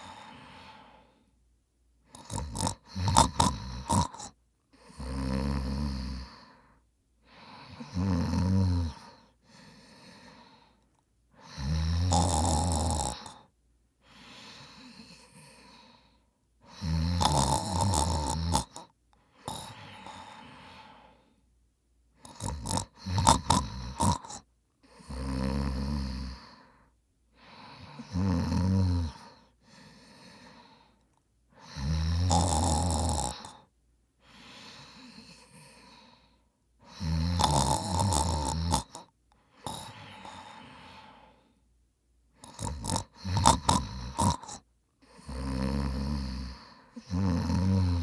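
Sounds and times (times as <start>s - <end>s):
man snoring: 0.0s - 1.0s, 2.1s - 6.6s, 7.6s - 10.6s, 11.4s - 13.5s, 16.7s - 21.2s, 22.2s - 26.7s, 27.5s - 30.8s, 31.6s - 33.7s, 34.3s - 41.4s, 42.4s - 48.0s
quiet breaths: 0.0s - 48.0s.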